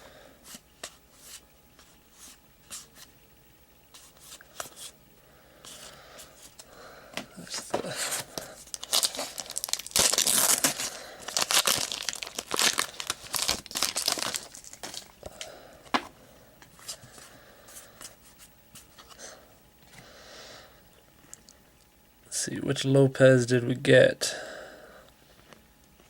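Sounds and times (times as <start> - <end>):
wrapper tearing and crinkling: 8.3 - 15.2.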